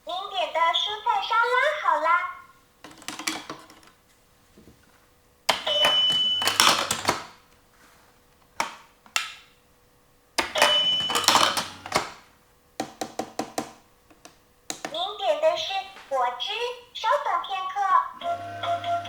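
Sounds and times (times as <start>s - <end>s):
plastic clicks: 2.8s - 4.0s, 5.5s - 7.4s, 10.4s - 12.2s
toy cash register clicking and ringing: 5.5s - 7.3s, 10.4s - 12.2s, 18.2s - 19.0s.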